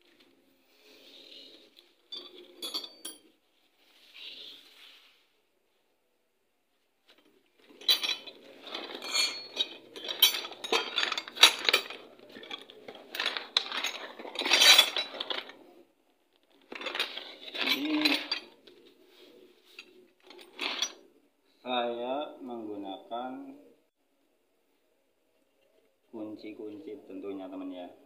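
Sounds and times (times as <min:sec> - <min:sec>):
metal hand tools clattering: 0:02.1 - 0:03.3, 0:07.6 - 0:15.6, 0:16.7 - 0:18.6, 0:20.2 - 0:21.0.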